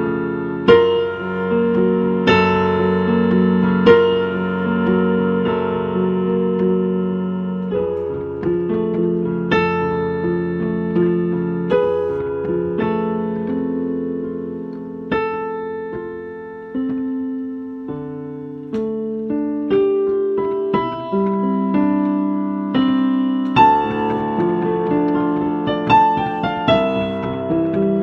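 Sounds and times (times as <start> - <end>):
slow solo piano piece: 0.0 - 28.0.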